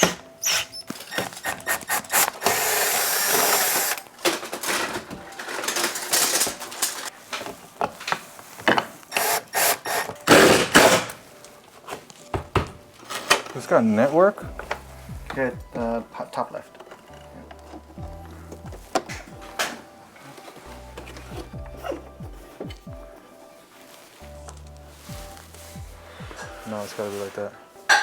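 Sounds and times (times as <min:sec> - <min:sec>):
handheld power tool running: 0:01.1 - 0:04.1, 0:09.1 - 0:11.1
knocks and clatter on wall: 0:12.3 - 0:12.9.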